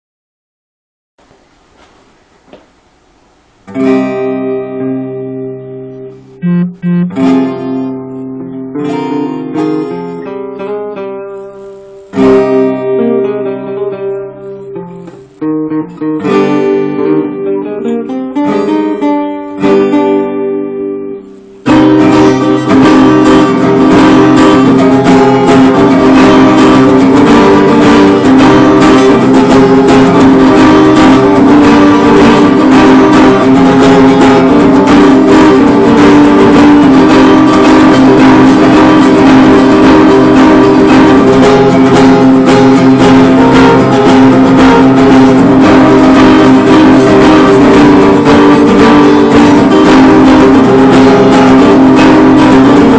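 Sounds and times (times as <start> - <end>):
fast guitar strumming: 3.7 - 52.9
plucked guitar notes: 3.7 - 52.9.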